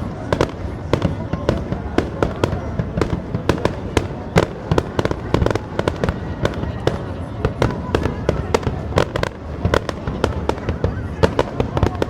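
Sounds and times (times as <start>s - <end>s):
fireworks bursting: 0.0s - 12.0s.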